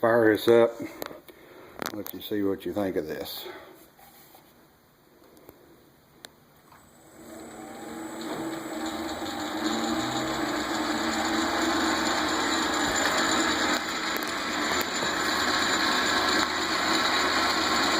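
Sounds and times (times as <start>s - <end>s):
lathe motor whirring: 6.8s - 17.9s.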